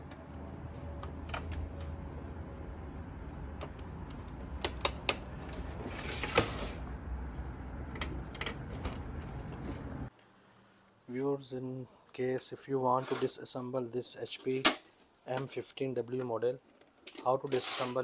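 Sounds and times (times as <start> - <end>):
low steady hum: 0.0 - 11.2
sharp clicks and knocks: 3.6 - 6.6, 7.9 - 10.0.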